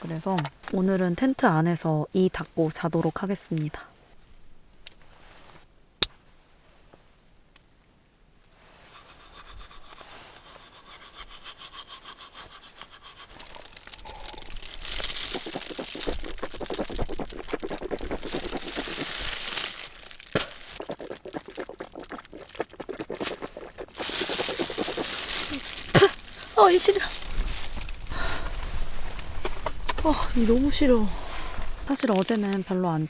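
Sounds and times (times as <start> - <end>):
toothbrush scrubbing teeth: 9.0 - 28.0, 31.9 - 32.6.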